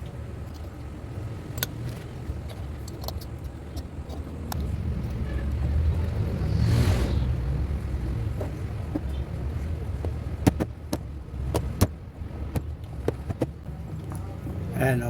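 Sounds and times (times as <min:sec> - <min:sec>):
metal clicks and taps: 0:00.0 - 0:05.2.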